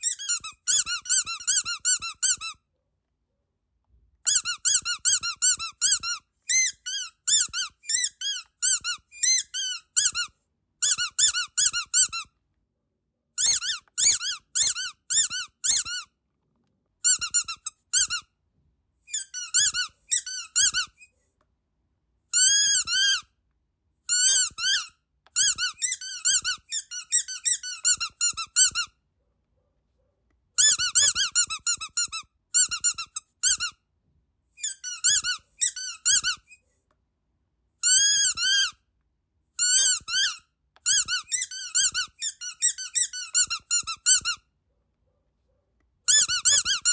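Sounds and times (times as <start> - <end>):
squeaky dog toy squeaking: 0.0 - 2.7, 4.2 - 12.4, 13.4 - 16.2, 17.0 - 18.3, 19.1 - 21.2, 22.3 - 23.3, 24.1 - 29.0, 30.6 - 33.9, 34.6 - 36.6, 37.8 - 38.9, 39.6 - 44.5, 46.1 - 46.9.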